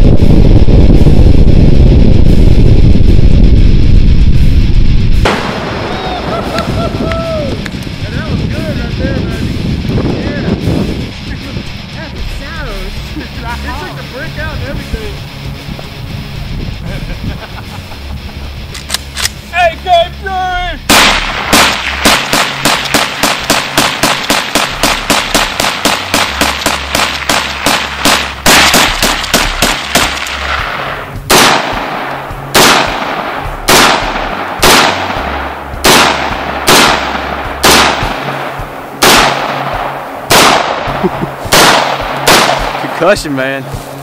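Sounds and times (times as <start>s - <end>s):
rapid gunfire: 20.9s - 43.3s.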